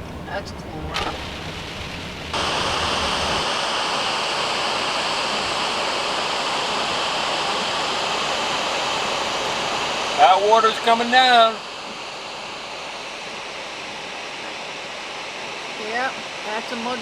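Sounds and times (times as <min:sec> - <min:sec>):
low rumble: 0:00.0 - 0:16.6
waterfall rushing: 0:02.4 - 0:11.8.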